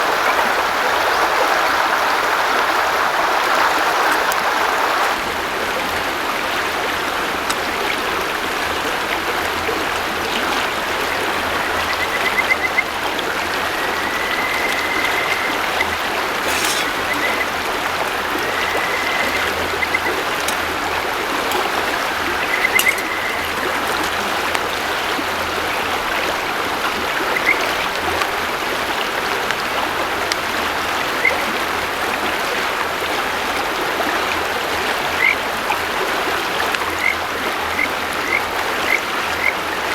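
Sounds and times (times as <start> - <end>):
river water flowing over stones: 0.0 - 39.9
short high trilling calls: 13.6 - 17.6.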